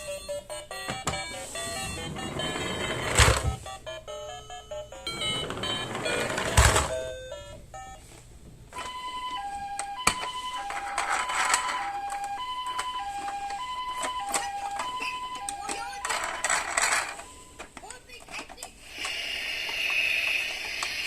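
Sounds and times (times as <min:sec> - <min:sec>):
two-tone ambulance siren: 0:08.8 - 0:16.5.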